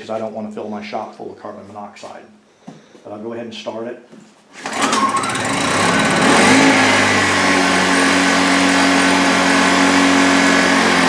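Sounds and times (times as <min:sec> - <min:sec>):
small generator engine running: 0:04.6 - 0:11.0.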